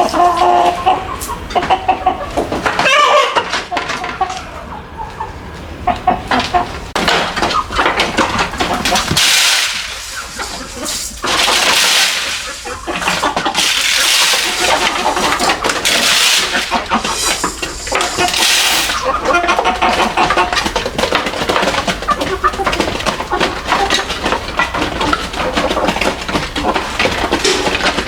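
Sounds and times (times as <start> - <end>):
chickens clucking: 0.0 - 28.0
loud rustling or hissing noise: 8.5 - 20.3.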